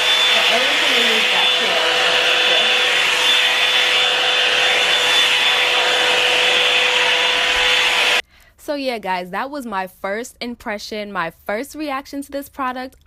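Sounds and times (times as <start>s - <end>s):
high motor whine: 0.0s - 8.2s
hot air brush blowing air: 0.0s - 8.2s.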